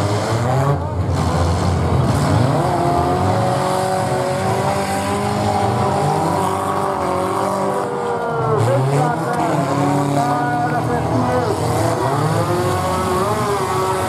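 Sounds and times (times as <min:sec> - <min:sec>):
car engines revving: 0:00.0 - 0:14.0.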